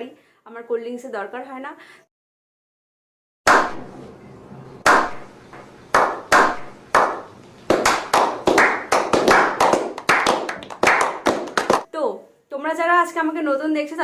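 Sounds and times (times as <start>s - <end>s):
hand claps: 4.8s - 5.3s, 5.9s - 11.9s.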